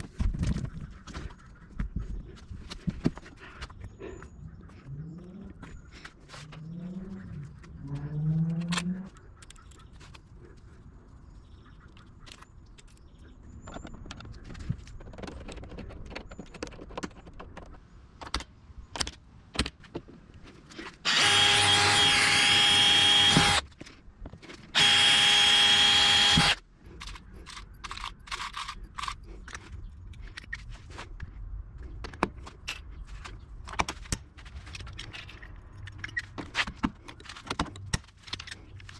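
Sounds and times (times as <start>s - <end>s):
clicks and knocks of tools: 7.6s - 10.2s, 31.8s - 38.9s
power drill running: 21.1s - 23.6s, 24.7s - 26.6s.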